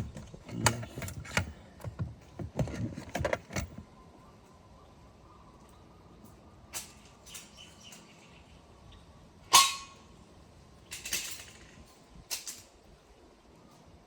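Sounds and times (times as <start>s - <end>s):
metal jack stands clanking: 0.0s - 3.8s.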